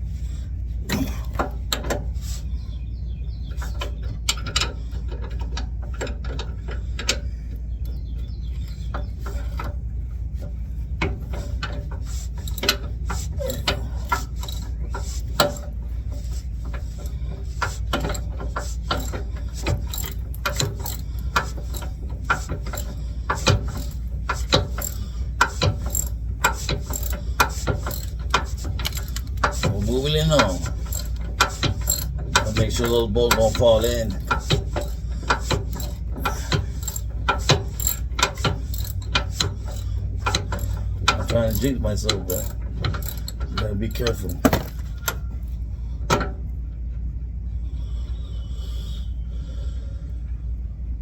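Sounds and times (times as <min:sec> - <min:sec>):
steady low hum: 0:00.0 - 0:51.0
ratchet wrench clicking: 0:18.9 - 0:44.8.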